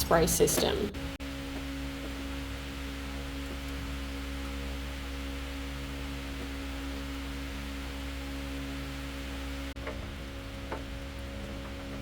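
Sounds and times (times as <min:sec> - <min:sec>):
steady machine hum: 0:00.0 - 0:12.0.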